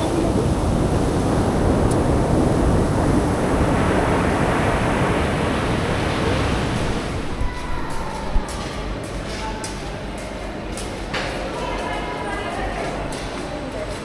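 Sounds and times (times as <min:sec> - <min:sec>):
wind buffeting microphone: 0:00.0 - 0:08.7
sea waves washing on beach: 0:00.0 - 0:09.1.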